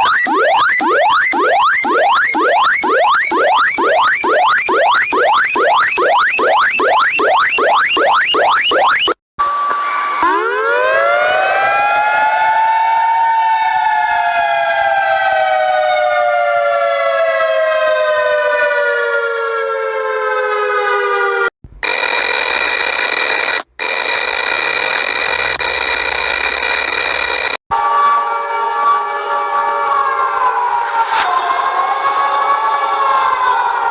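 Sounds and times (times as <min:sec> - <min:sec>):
air raid siren winding: 0:00.0 - 0:09.2.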